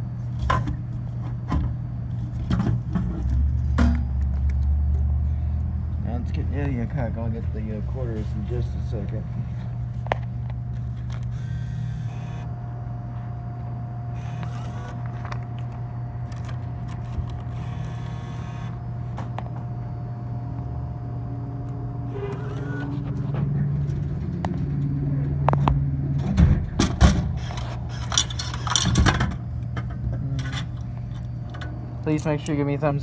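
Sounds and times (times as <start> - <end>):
coins clinking into vending machine: 27.6 - 29.4, 32.0 - 32.8.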